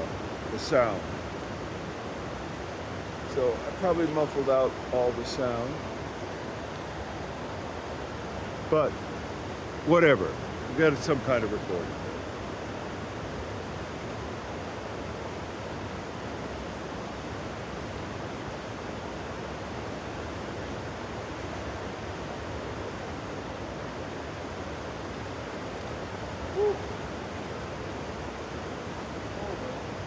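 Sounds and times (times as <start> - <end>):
rain hiss: 0.0 - 30.0
river flowing: 0.0 - 30.0.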